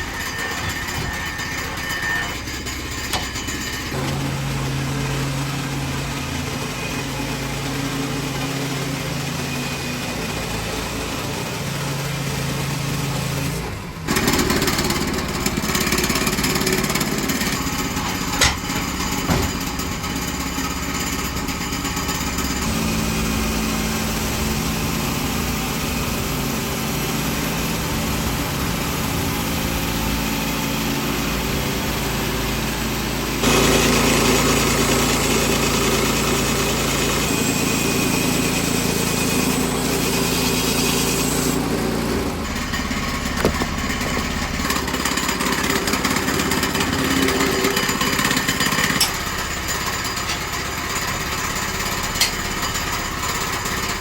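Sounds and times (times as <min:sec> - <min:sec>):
small gasoline engine under load: 0:00.0 - 0:54.0
band saw blade sawing log: 0:21.2 - 0:50.7.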